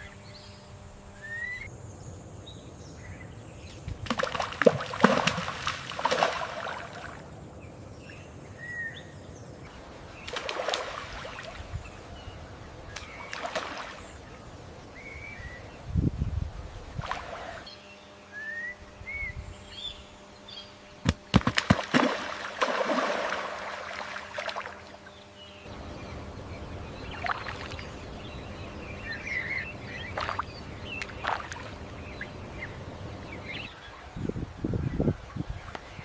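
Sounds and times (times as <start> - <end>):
water splashing: 4.0 - 7.2, 10.2 - 11.7, 12.9 - 14.1, 21.1 - 25.1, 27.1 - 27.9, 29.9 - 32.2
bird chirps: 25.1 - 33.9.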